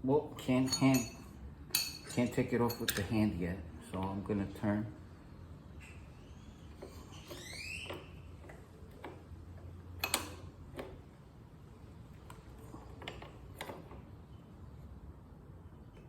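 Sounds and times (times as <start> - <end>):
wrenches clicking on metal: 0.4 - 3.2
short rising squeak: 6.3 - 8.3.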